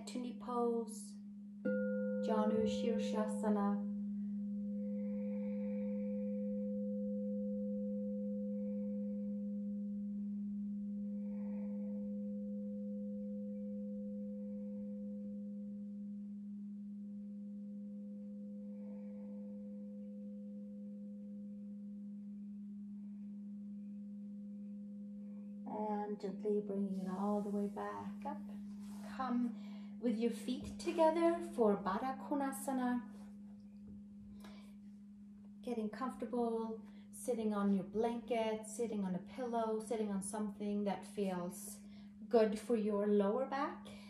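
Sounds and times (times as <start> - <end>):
singing bowl ringing: 1.1 - 30.7.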